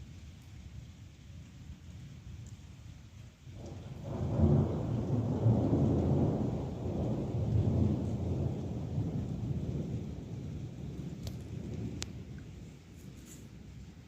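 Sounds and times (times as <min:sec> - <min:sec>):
steady rain: 0:00.0 - 0:14.0
rolling thunder: 0:03.6 - 0:14.0.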